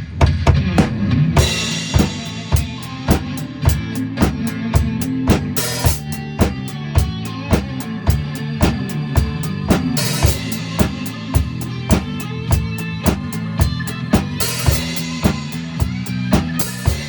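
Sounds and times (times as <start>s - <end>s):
backing music: 0.0s - 17.0s
drum kit beat: 0.0s - 17.0s
cymbal crash: 0.8s - 6.6s, 10.0s - 12.2s, 13.8s - 17.0s.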